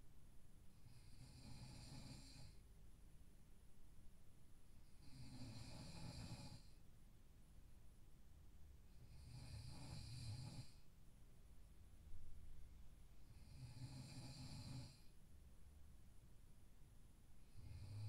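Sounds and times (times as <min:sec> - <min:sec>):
quiet breathing: 0:00.7 - 0:02.7, 0:04.8 - 0:06.9, 0:08.8 - 0:11.0, 0:12.6 - 0:15.2, 0:17.3 - 0:18.0
person snoring: 0:00.9 - 0:02.6, 0:05.0 - 0:06.7, 0:09.1 - 0:10.8, 0:13.4 - 0:15.1, 0:17.5 - 0:18.0.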